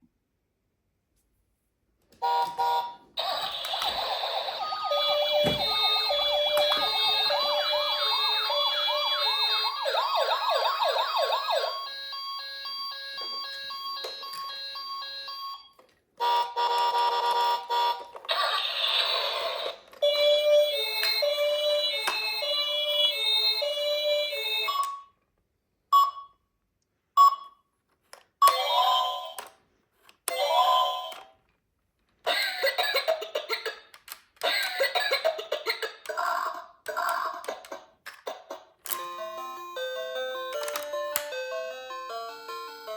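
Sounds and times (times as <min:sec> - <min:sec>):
toy siren two-tone beeps: 0:02.3 - 0:18.6
toy siren rising wail: 0:03.2 - 0:15.5, 0:16.2 - 0:24.9.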